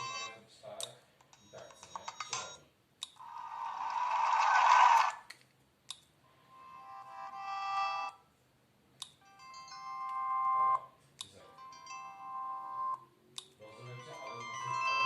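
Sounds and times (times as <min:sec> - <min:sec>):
phone alert-tone melodies: 0:00.0 - 0:00.4, 0:06.5 - 0:08.1, 0:09.2 - 0:10.8, 0:11.4 - 0:13.0, 0:13.6 - 0:15.0.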